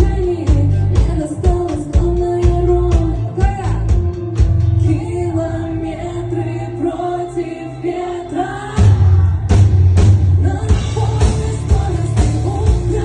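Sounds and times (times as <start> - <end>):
person singing: 0.0 - 4.2, 4.8 - 9.7, 10.3 - 13.0
drums: 0.0 - 7.1, 8.4 - 13.0
rock band playing: 0.0 - 7.3, 7.9 - 13.0
heavy bass: 0.0 - 13.0.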